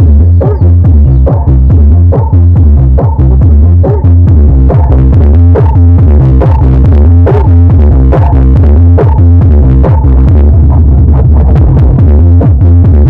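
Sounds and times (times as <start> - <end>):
electronic dance music heavy bass: 0.0 - 13.0.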